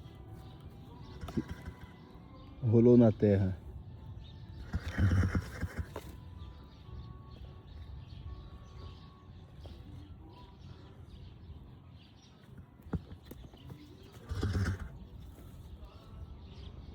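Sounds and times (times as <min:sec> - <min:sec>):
horse breathing with snoring rumble: 0:04.6 - 0:06.1, 0:14.1 - 0:15.4.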